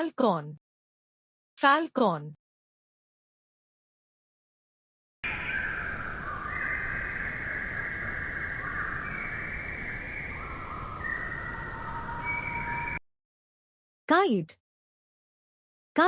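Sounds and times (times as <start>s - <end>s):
steady background hiss: 5.2s - 13.0s.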